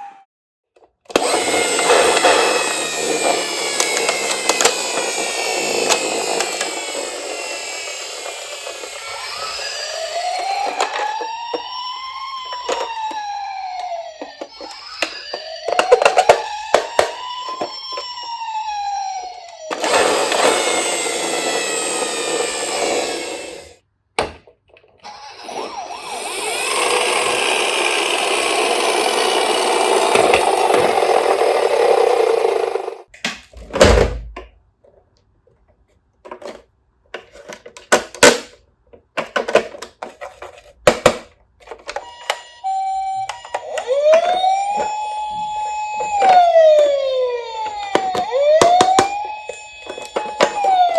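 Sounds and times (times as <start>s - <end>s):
toy ambulance siren wailing: 1.1s - 23.8s, 25.0s - 33.1s, 41.7s - 50.9s.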